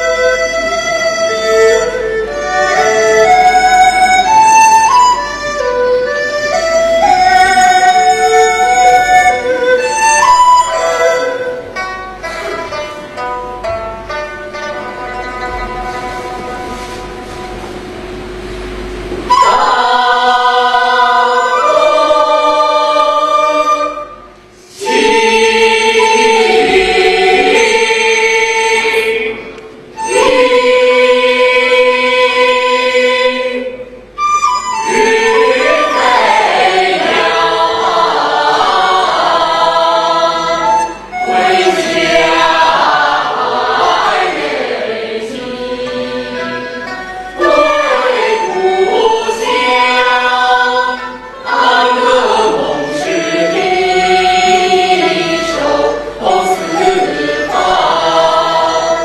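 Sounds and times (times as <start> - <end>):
choir singing slow song: 17.0 - 34.2, 34.8 - 59.0.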